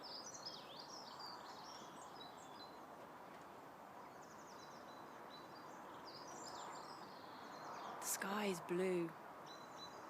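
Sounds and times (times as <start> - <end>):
low outdoor hiss: 0.0 - 10.0
birds chirping and trilling: 4.0 - 10.0.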